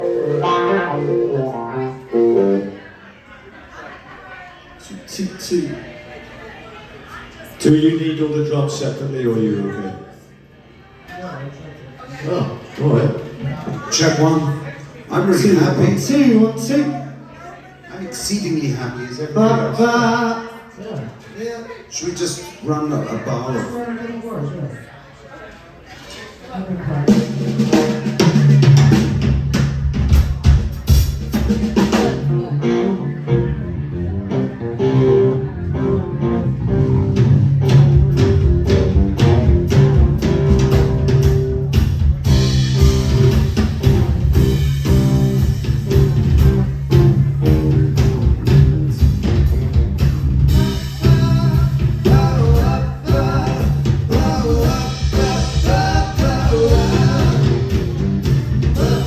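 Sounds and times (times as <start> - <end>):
low bass line: 0.0 - 2.8, 32.0 - 59.0
rock band playing: 0.0 - 2.9, 27.0 - 59.0
guitar: 0.0 - 3.1, 27.1 - 59.0
drum kit: 27.0 - 32.9, 36.5 - 59.0.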